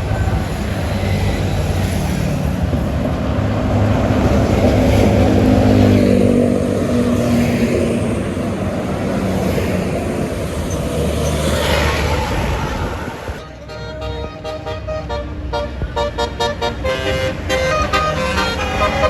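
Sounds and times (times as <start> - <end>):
bus diesel engine passing: 0.0 - 19.0.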